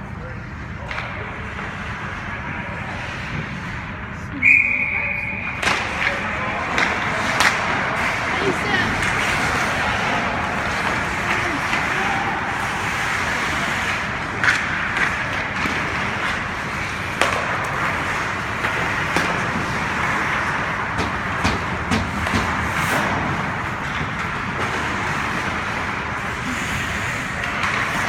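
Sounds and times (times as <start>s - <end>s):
hockey sticks and puck knocking: 5.6s - 28.0s.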